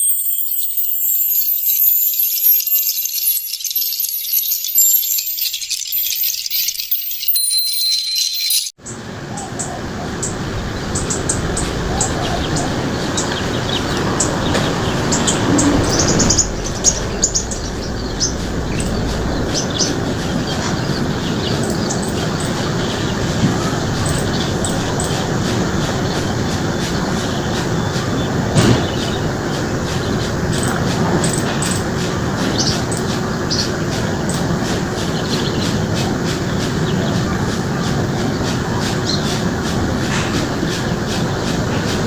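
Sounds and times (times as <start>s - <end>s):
high-pitched tinkling and chirping: 0.0s - 9.0s, 9.7s - 37.2s
high bird chirps and tweets: 0.0s - 42.0s
steady rushing background: 9.1s - 42.0s.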